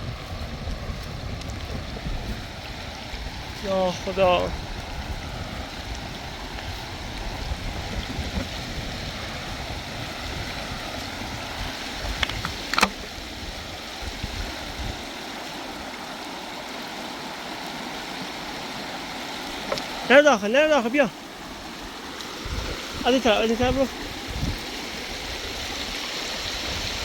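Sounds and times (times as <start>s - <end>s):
rushing river water: 0.0s - 27.0s
sharp click: 12.2s - 13.0s.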